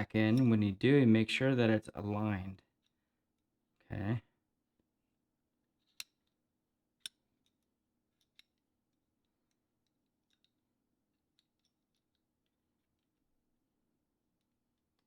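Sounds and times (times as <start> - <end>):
pistol parts clicking: 5.8 - 6.4, 7.0 - 10.6.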